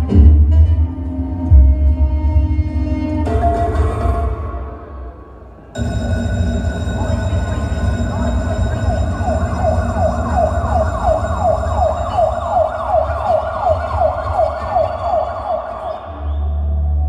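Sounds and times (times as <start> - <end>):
siren wail in dance music: 6.1 - 16.8
steady low bass: 16.1 - 17.0.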